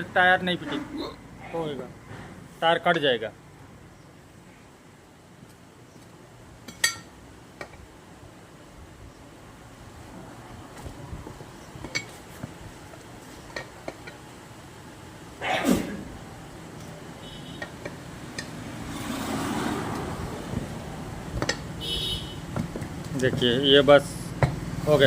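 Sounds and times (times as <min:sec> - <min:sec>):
tyre levers clinking on rim: 0:06.7 - 0:07.8, 0:11.6 - 0:12.5.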